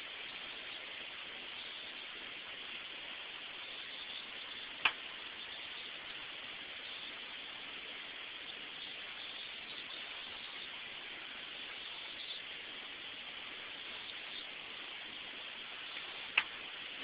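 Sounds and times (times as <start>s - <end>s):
steady background hiss: 0.0s - 17.0s.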